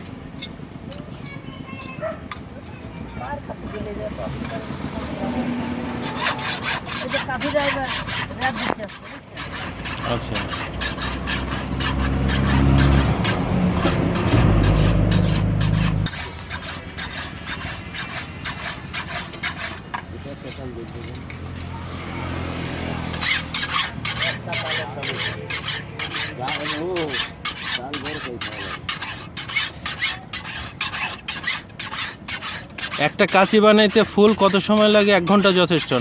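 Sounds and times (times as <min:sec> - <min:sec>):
file scraping metal blade: 0:05.9 - 0:21.3, 0:23.1 - 0:36.0.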